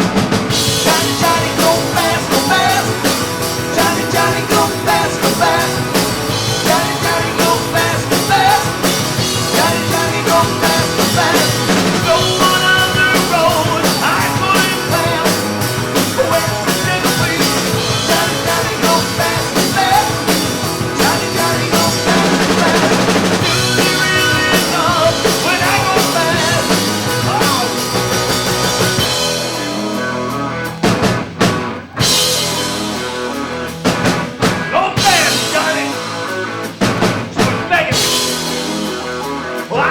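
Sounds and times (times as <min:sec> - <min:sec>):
drum kit: 0:00.0 - 0:39.9
guitars: 0:00.0 - 0:39.9
person singing: 0:00.7 - 0:28.0, 0:34.7 - 0:36.2, 0:39.6 - 0:39.9.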